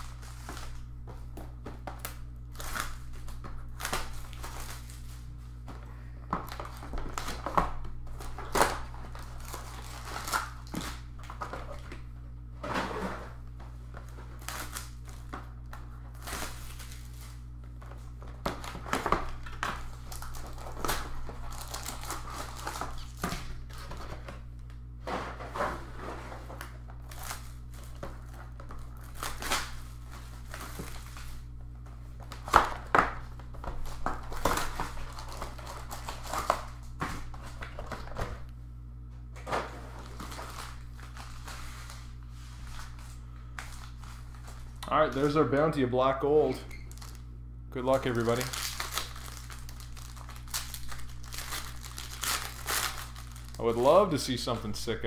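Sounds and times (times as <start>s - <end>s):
card packs tearing: 0.0s - 1.0s, 1.9s - 5.3s, 6.3s - 11.9s, 13.9s - 24.2s, 26.6s - 31.5s, 32.1s - 38.3s, 39.6s - 45.5s, 46.7s - 47.2s, 47.8s - 54.6s
foil wrappers crinkling: 0.0s - 12.1s, 13.3s - 24.8s, 26.5s - 38.4s, 39.6s - 45.4s, 46.7s - 55.0s
steady low hum: 0.0s - 55.0s.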